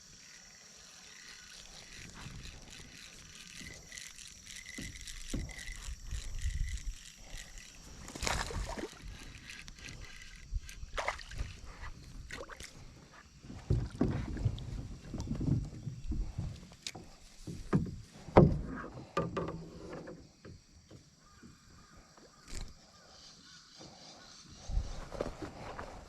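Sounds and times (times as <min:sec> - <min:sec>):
water splashes and knocks: 0:11.0 - 0:11.5, 0:13.5 - 0:21.0.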